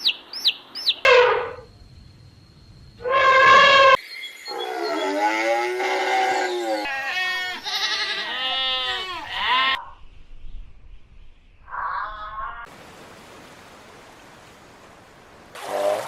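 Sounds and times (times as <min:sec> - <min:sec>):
goats bleating: 0:05.3 - 0:09.8.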